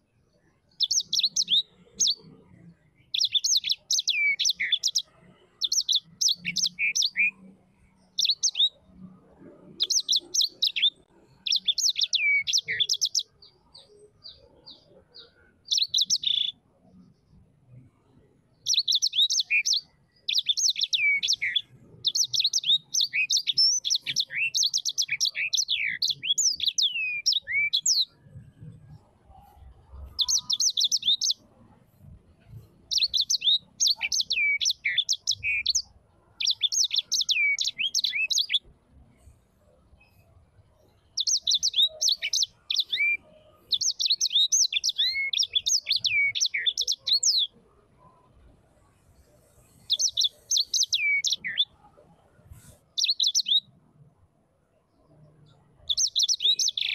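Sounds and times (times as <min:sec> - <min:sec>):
bird singing high chirps: 0:00.0 - 0:31.7, 0:32.4 - 0:53.7, 0:55.0 - 0:56.9
single bird chirps: 0:55.2 - 0:56.9.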